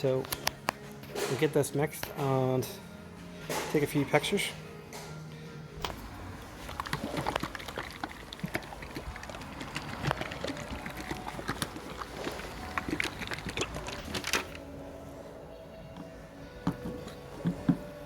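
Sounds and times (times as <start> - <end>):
liquid being poured and mixed: 6.0 - 14.6.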